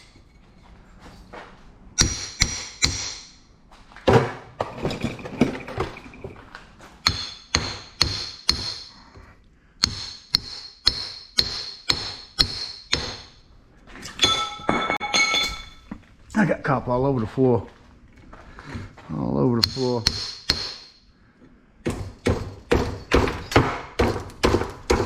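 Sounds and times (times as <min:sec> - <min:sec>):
hammer striking steel: 0:02.0 - 0:03.4, 0:07.0 - 0:09.1, 0:09.8 - 0:13.4, 0:14.1 - 0:15.9, 0:19.6 - 0:21.0, 0:21.8 - 0:25.0.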